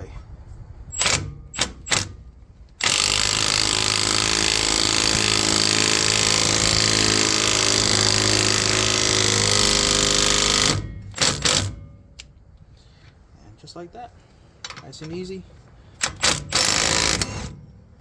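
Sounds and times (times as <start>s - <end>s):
impact wrench running: 0.9s - 2.2s, 2.8s - 11.8s, 16.0s - 17.6s.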